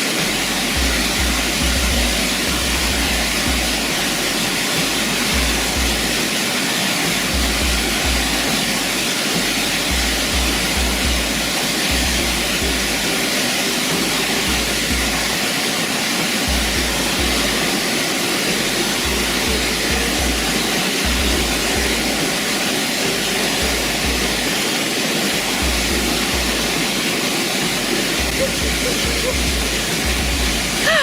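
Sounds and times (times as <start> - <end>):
music with low bass line: 0.0 - 31.0
waterfall rushing: 0.0 - 31.0.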